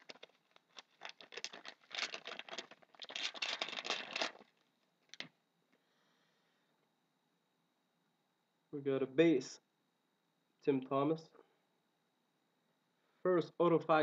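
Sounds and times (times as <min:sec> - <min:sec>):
wrapper tearing and crinkling: 0:00.0 - 0:05.3.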